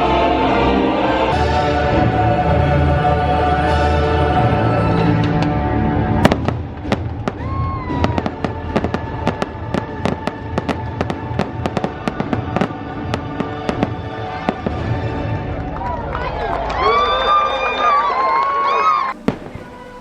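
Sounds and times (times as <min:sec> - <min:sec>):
show music: 0:00.0 - 0:20.0
fireworks popping and crackling: 0:06.2 - 0:15.8, 0:19.1 - 0:20.0.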